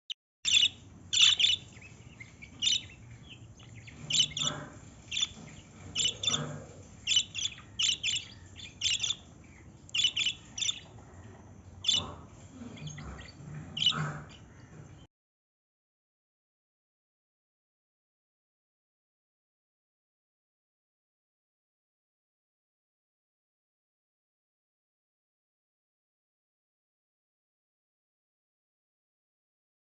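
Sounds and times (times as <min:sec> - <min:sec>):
bird chirping: 0:00.5 - 0:15.1.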